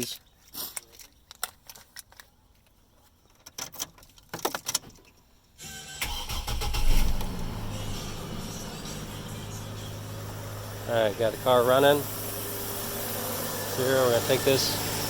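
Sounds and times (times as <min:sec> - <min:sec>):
car engine starting and idling: 0:05.6 - 0:15.0.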